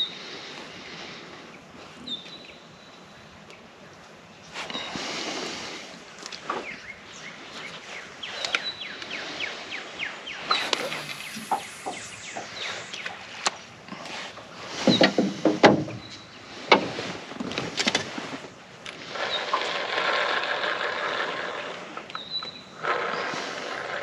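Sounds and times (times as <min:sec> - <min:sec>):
rushing hiss: 0:10.4 - 0:15.6.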